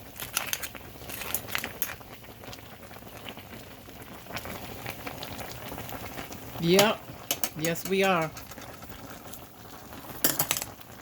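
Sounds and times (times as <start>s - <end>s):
pot bubbling: 0.0s - 11.0s
crackles and small clicks: 0.1s - 2.6s, 6.2s - 9.4s.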